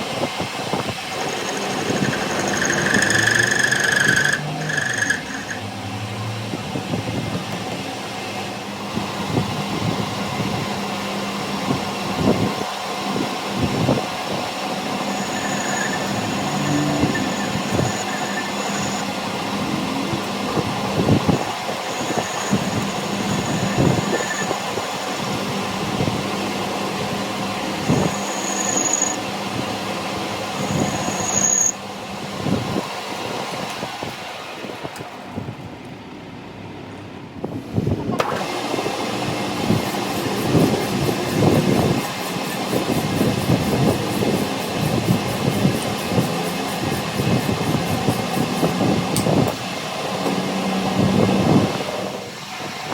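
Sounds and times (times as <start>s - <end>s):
machine running: 0.8s - 6.2s, 13.5s - 29.5s, 38.2s - 49.0s
high-pitched squeal: 1.0s - 5.7s, 14.7s - 25.4s, 27.8s - 29.2s, 30.6s - 31.8s.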